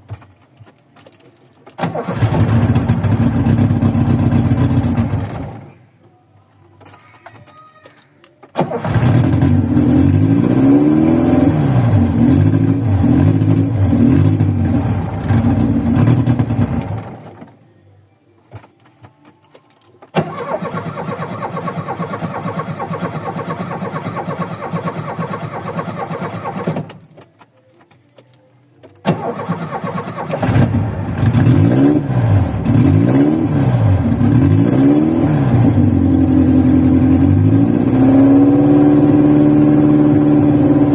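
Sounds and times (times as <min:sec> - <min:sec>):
starter cranking: 0:19.7 - 0:27.2.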